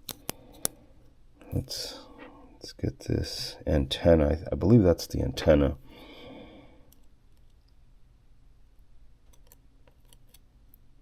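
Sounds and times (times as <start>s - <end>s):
low room hum: 0.0s - 11.0s.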